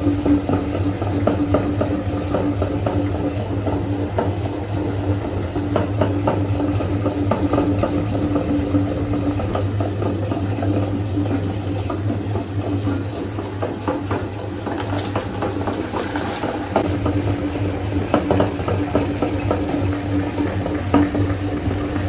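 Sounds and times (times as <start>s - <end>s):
meat grinder motor humming: 0.0s - 22.0s
food crackling in grinder: 9.5s - 22.0s.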